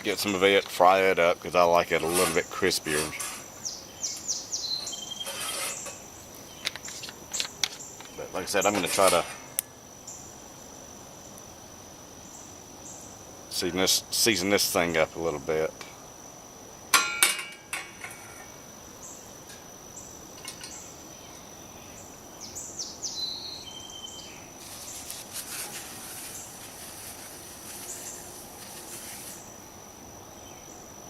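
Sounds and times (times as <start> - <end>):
crickets droning: 0.0 - 31.0
soft rustling hiss: 0.0 - 31.0
bird chirps: 2.4 - 8.8, 20.0 - 25.2.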